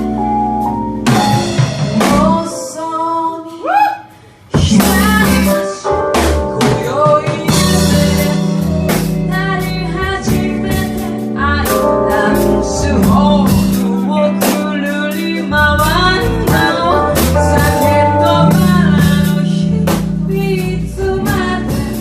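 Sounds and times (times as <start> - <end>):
sustained bass notes: 0.0 - 2.6, 4.6 - 22.0
drum kit beat: 0.0 - 2.9, 4.5 - 22.0
bending melodic lead line: 4.6 - 21.9.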